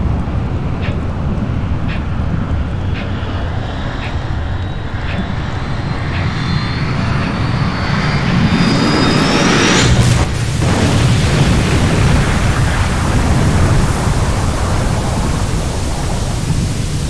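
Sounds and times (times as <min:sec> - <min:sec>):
deep rumbling roar: 0:00.4 - 0:17.0
whistling tone rising in pitch: 0:02.5 - 0:10.5.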